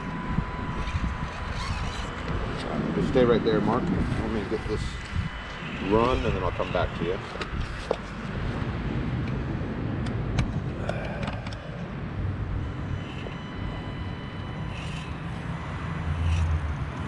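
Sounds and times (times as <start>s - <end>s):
small electric motor whining: 0.0s - 9.5s, 10.8s - 17.0s.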